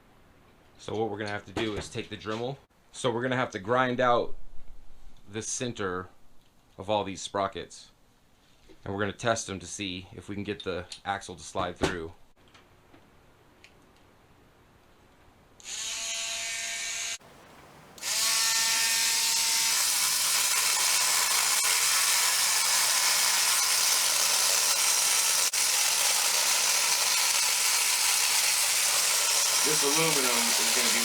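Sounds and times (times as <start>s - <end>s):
rotary tool grinding metal: 18.0s - 31.0s.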